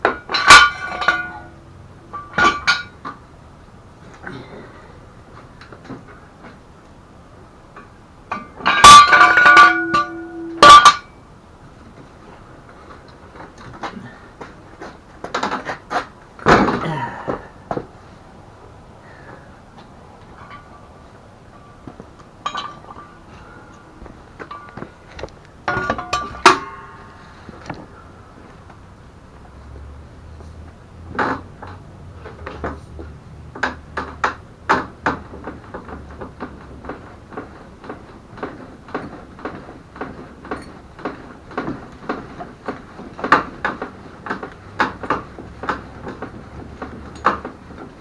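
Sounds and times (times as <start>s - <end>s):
metal objects clinking: 0.3s - 2.9s, 8.3s - 11.1s, 22.4s - 23.2s, 25.7s - 26.9s.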